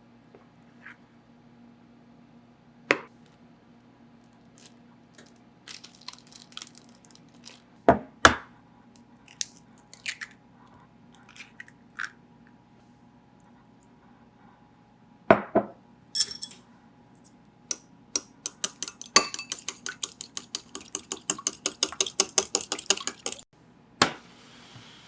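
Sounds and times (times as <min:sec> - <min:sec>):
low electrical hum: 0:00.0 - 0:20.2.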